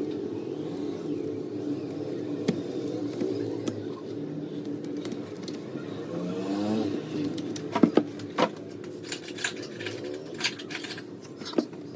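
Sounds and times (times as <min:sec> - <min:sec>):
mechanical hum: 0:00.0 - 0:11.9
metallic clinks and knocks: 0:07.6 - 0:11.9.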